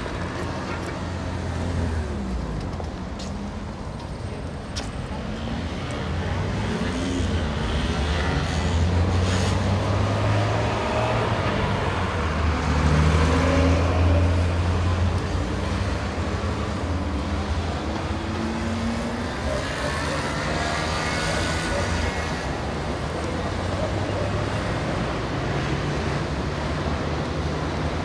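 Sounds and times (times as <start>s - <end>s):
city street traffic: 0.0s - 28.0s.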